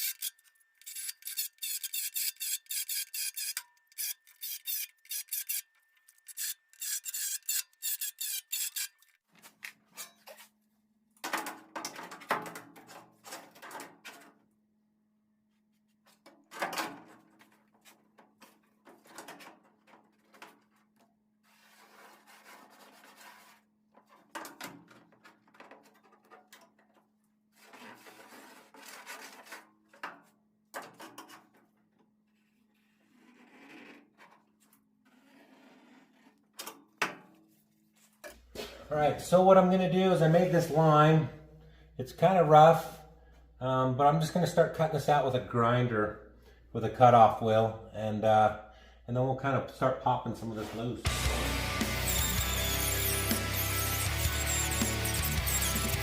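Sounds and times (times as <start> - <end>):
drill grinding sheet steel: 0.0 - 5.6, 6.3 - 9.0, 51.1 - 56.0.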